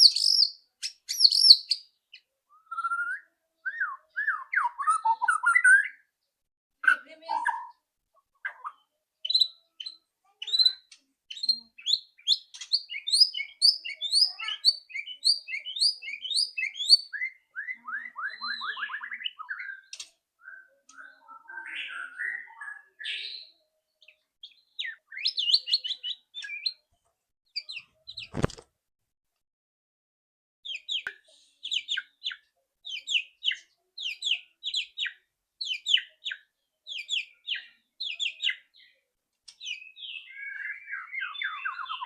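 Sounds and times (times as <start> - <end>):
bird singing whistled phrases: 0.0 - 1.9, 2.5 - 6.0, 9.3 - 23.6, 24.4 - 26.8, 39.6 - 42.0.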